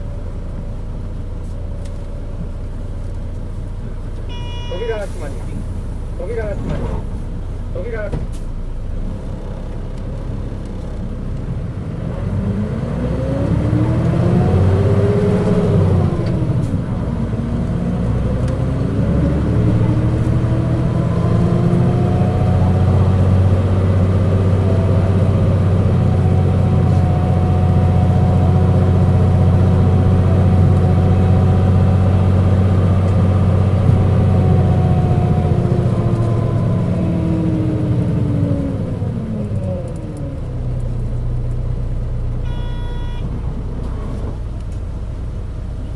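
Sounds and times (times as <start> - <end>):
bus engine hum: 0.0 - 45.9
bus whining tone: 4.2 - 6.1, 13.5 - 44.4.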